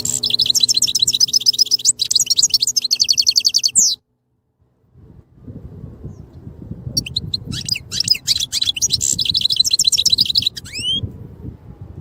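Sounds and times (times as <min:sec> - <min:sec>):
goldfinch singing: 0:00.0 - 0:04.0, 0:07.0 - 0:11.0
low background rumble: 0:00.0 - 0:12.0.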